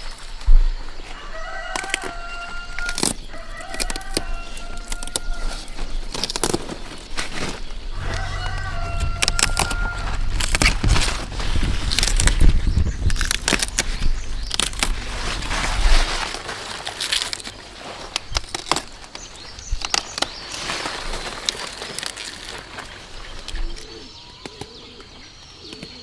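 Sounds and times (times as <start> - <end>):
leaves rustling and crackling: 0.0 - 24.1
low rumble: 7.9 - 15.8.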